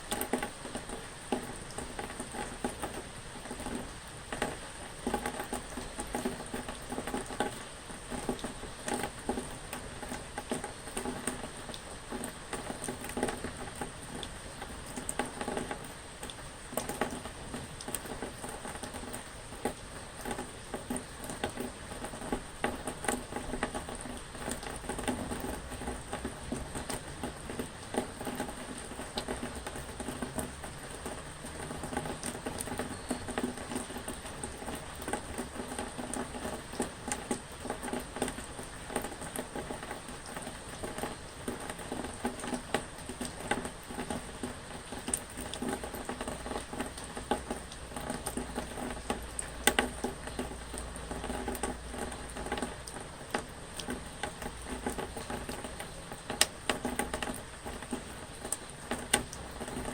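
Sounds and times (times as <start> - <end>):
rain pattering: 0.0 - 59.9.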